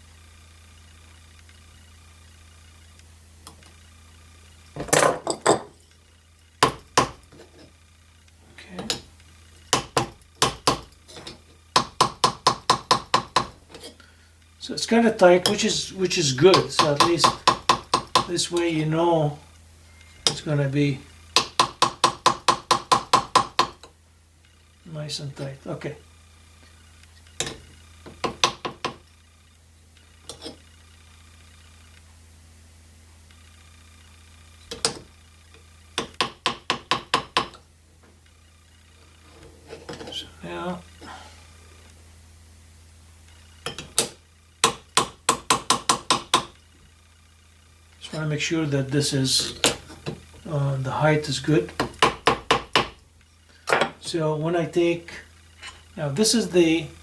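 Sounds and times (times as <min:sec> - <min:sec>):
small hammer tapping metal: 0:06.6 - 0:07.2, 0:09.7 - 0:10.9, 0:11.8 - 0:13.9, 0:16.5 - 0:18.3, 0:21.4 - 0:23.9, 0:36.0 - 0:37.6, 0:43.6 - 0:46.6.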